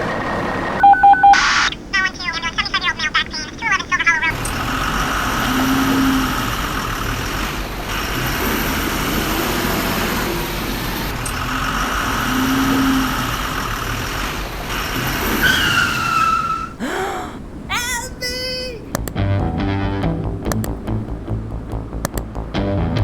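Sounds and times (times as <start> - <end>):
heavy vehicle engine with whine: 0.0 - 16.8.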